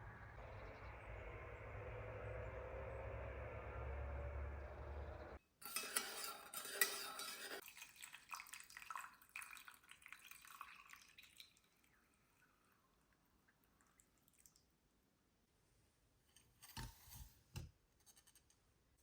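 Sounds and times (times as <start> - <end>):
steady low rumble: 0.0 - 5.4
dishes and utensils clattering: 5.6 - 7.6.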